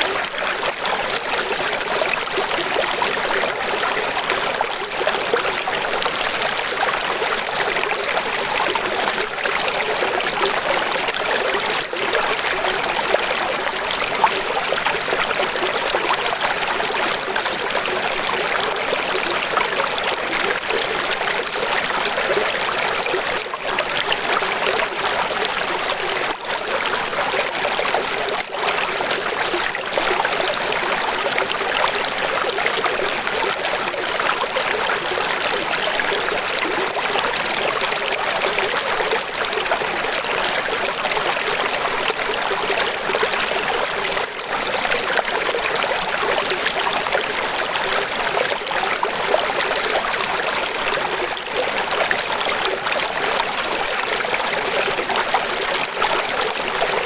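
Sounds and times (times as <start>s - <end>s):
running water rushing: 0.0s - 57.0s.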